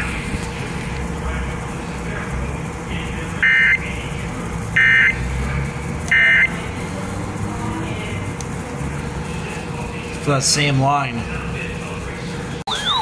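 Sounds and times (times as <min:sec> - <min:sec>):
steady low hum: 0:00.0 - 0:13.0
buzzy digital chirps: 0:04.7 - 0:07.8.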